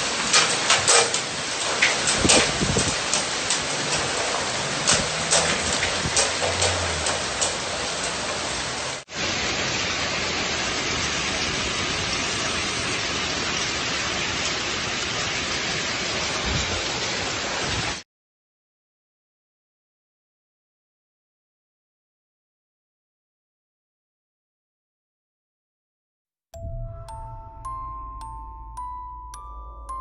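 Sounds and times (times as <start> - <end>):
heavy rain: 0.0 - 18.0.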